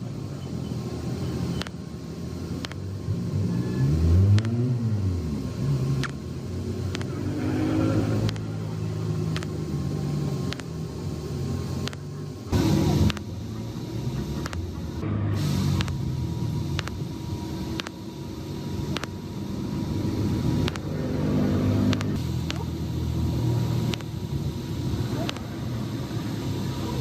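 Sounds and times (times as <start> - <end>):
engine running: 0.0 - 27.0
loud hiss burst: 12.5 - 27.0.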